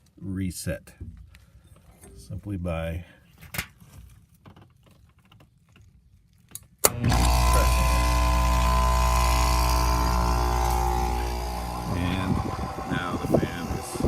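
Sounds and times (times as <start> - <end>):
heat pump humming and whining: 6.8 - 14.0.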